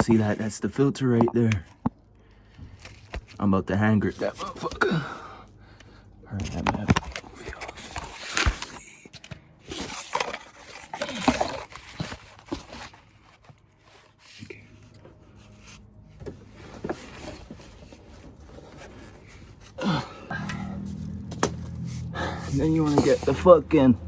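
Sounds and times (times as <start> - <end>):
man grunting and breathing hard: 19.8 - 20.9, 22.0 - 22.7.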